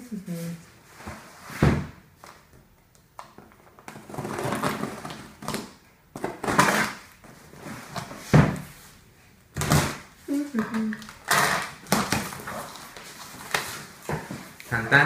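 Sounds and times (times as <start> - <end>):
cardboard rustling and scraping: 3.8 - 5.6, 6.2 - 9.0, 11.4 - 14.6.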